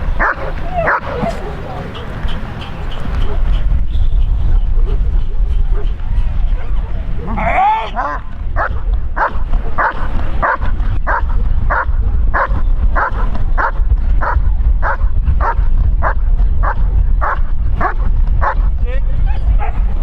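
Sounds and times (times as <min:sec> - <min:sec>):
steady low rumble: 0:00.0 - 0:20.0
dog barking: 0:00.1 - 0:03.6, 0:08.0 - 0:18.7, 0:19.4 - 0:20.0
dog whining: 0:00.2 - 0:01.9.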